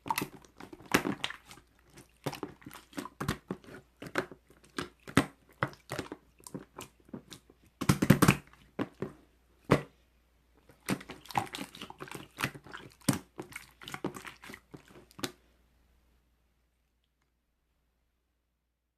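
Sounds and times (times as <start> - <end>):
crinkling and crunching: 0.0 - 9.2.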